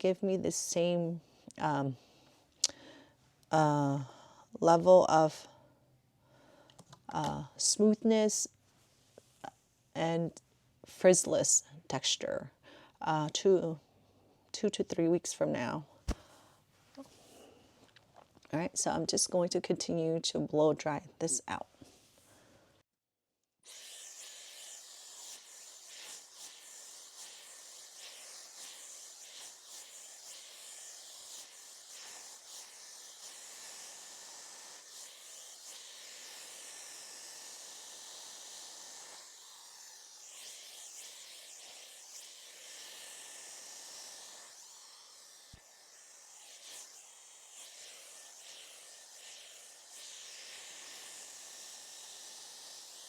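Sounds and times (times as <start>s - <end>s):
hair dryer blowing: 27.2s - 53.0s.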